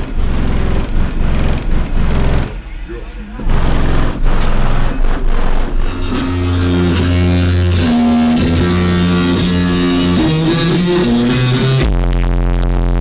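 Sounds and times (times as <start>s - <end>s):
electronic music with deep bass: 0.0s - 13.0s
music with held guitar notes: 5.7s - 11.9s.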